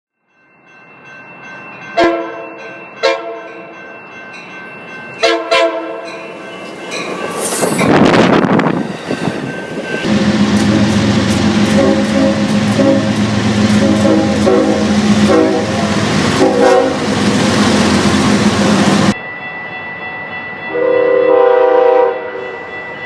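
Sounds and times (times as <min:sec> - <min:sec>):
train passing rush: 0:00.6 - 0:23.0
train horn blasts: 0:02.0 - 0:03.5, 0:05.2 - 0:06.1, 0:10.0 - 0:17.2, 0:20.7 - 0:22.6
train pitched drone: 0:04.8 - 0:23.0.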